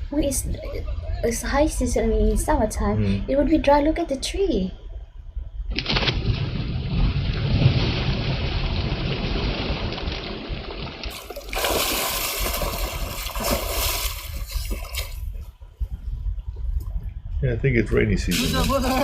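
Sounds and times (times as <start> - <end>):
water splashing and sloshing: 5.7 - 15.9, 18.3 - 19.0.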